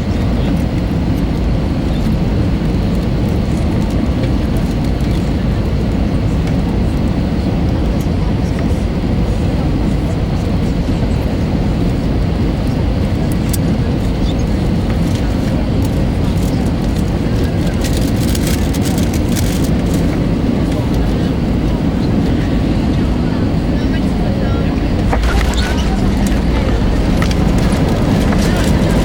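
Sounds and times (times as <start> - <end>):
airplane cabin engine rumble: 0.0 - 29.0.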